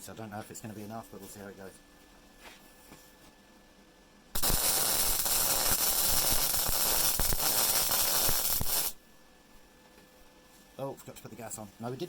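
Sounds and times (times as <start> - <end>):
welding arc crackling: 4.4 - 9.0.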